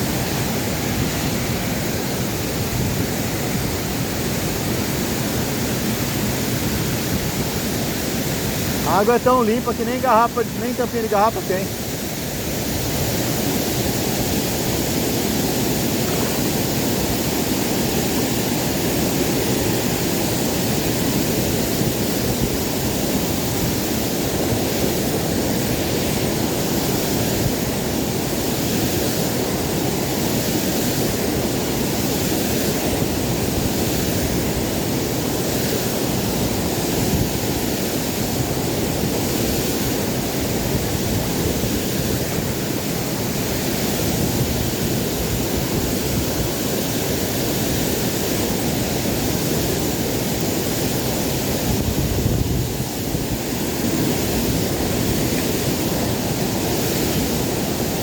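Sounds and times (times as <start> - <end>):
waterfall rushing: 0.0 - 31.9.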